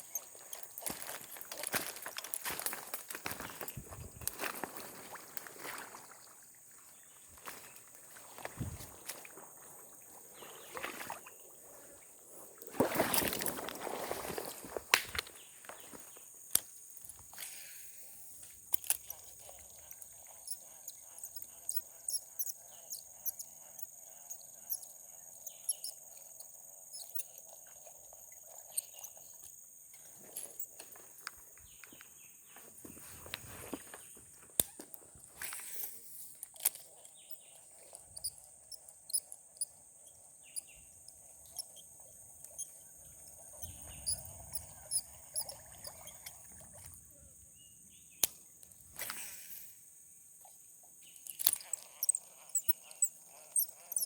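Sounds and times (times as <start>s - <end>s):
high-pitched insect drone: 17.8s - 30.8s, 51.3s - 54.0s.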